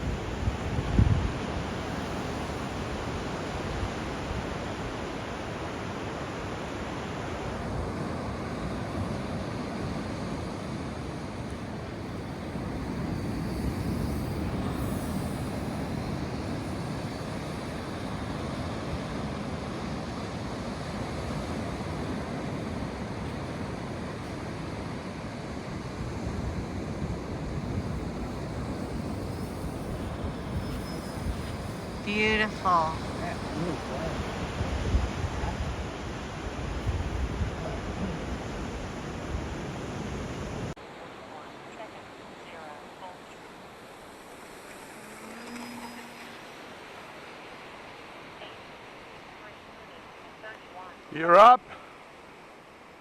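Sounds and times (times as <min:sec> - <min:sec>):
wind blowing across microphone: 0:00.0 - 0:40.8
surf washing on beach: 0:00.0 - 0:53.0.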